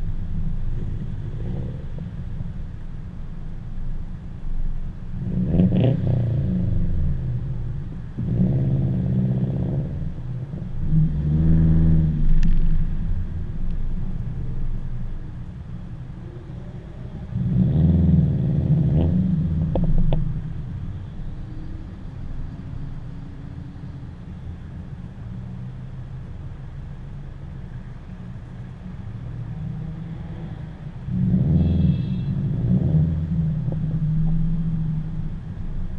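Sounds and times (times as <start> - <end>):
car engines cruising: 0.0 - 35.9
car engine accelerating: 5.1 - 24.6, 28.6 - 35.9.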